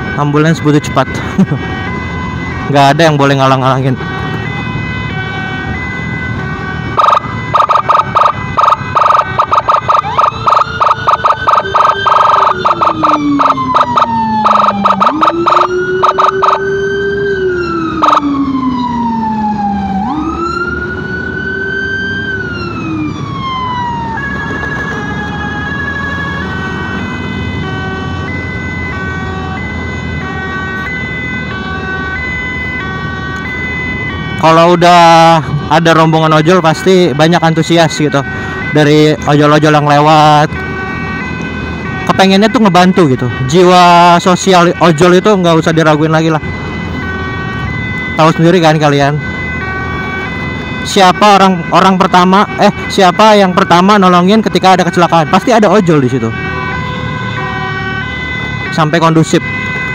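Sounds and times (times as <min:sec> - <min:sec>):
emergency sirens: 0:00.0 - 0:59.9.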